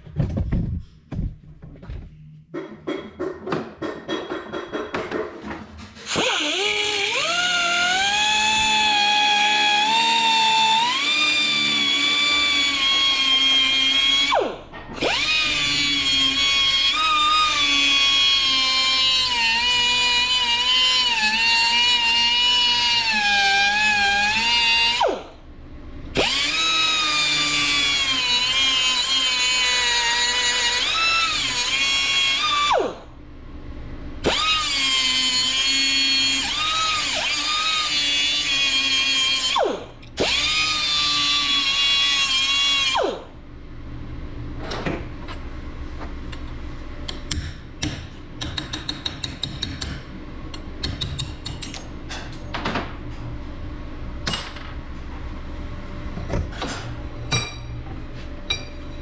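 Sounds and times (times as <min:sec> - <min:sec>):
power tool motor whining: 0:06.1 - 0:25.3, 0:26.2 - 0:33.0, 0:34.2 - 0:43.3.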